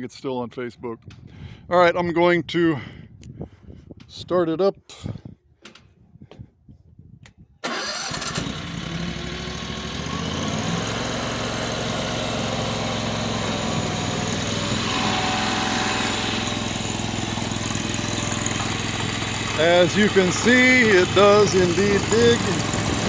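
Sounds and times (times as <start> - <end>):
skid steer engine running: 7.7 - 23.0.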